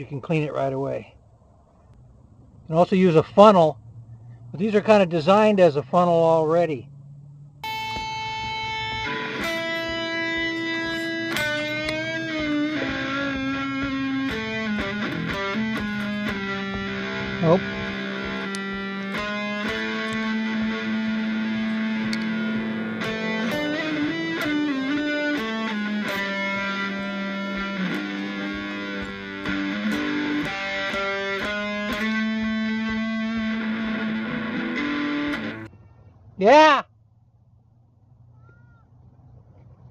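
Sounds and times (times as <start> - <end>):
guitar long held notes: 7.0 - 35.7.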